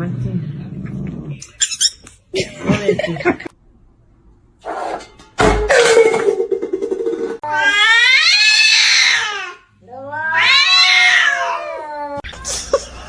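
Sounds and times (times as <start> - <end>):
cat yowling: 7.4 - 12.3.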